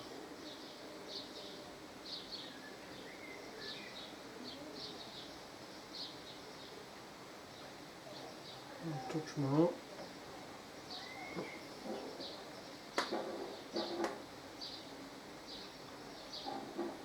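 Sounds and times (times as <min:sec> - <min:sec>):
low steady hiss: 0:00.0 - 0:17.0
faint high bird chirps: 0:10.9 - 0:11.7.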